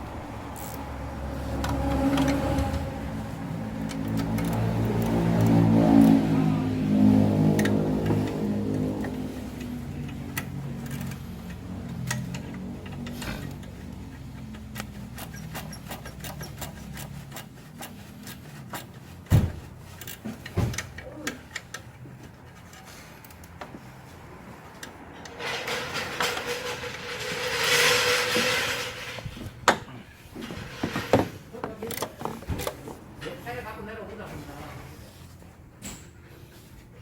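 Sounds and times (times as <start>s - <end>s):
steering clicks: 0.5s - 6.2s, 7.5s - 23.8s.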